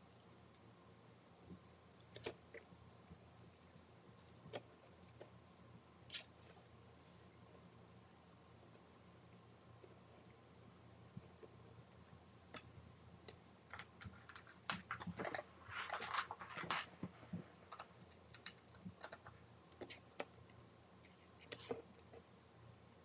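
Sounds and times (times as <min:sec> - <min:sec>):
clicks and scraping: 0:13.3 - 0:20.3.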